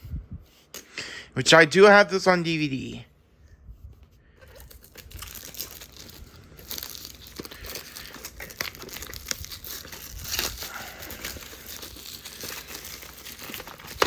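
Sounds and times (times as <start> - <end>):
packaging crinkling and tearing: 4.4 - 14.0.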